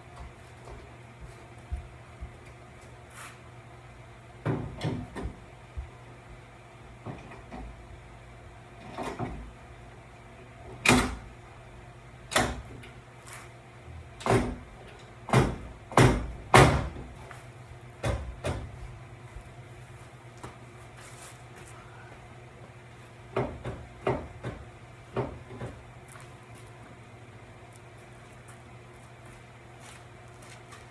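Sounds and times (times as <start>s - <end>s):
low steady hum: 0.0s - 30.9s
panel knocks and clunks: 15.3s - 17.2s, 18.0s - 19.0s, 23.3s - 25.8s.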